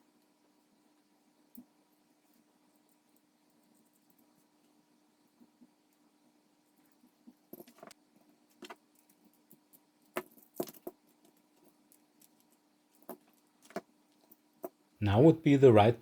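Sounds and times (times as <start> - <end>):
plastic parts clicking and rattling: 10.2 - 13.8.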